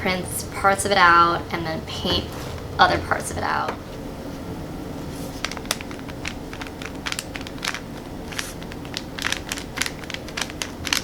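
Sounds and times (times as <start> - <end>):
paint supplies clicking: 5.4 - 11.0.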